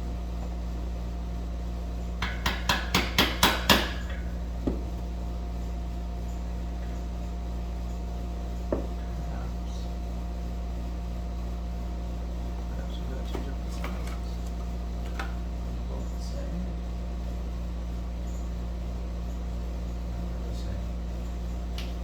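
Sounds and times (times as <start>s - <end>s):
hammer striking metal: 2.2s - 4.1s.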